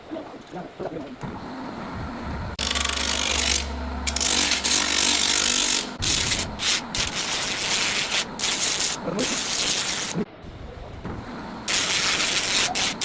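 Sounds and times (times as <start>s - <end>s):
low motor hum: 1.1s - 9.2s.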